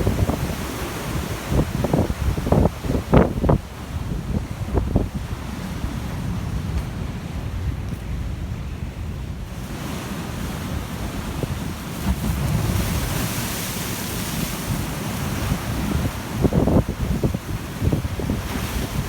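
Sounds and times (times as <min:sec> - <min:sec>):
wind buffeting microphone: 0:00.0 - 0:19.0
wave breaking on beach: 0:09.6 - 0:19.0.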